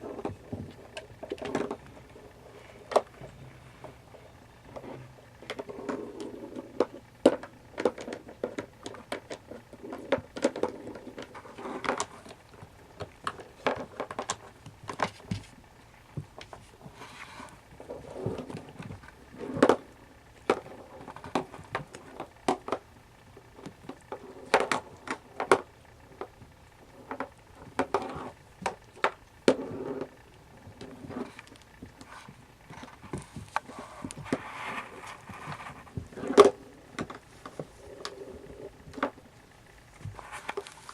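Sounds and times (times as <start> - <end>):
kittens playing thumps and taps: 4.7 - 19.8.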